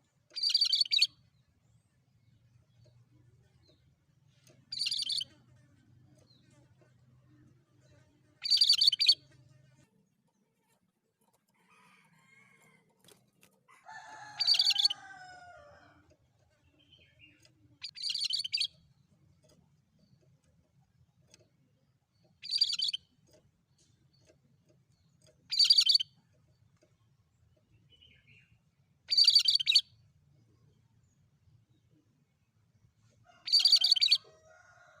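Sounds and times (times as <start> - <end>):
songbird chirping: 0.0 - 35.0.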